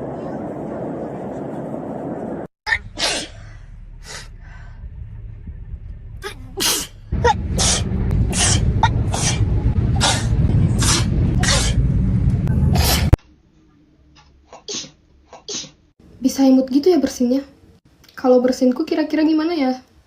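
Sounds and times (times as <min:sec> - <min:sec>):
steady low hum: 0:00.0 - 0:13.2
woman sneezing: 0:02.7 - 0:03.4.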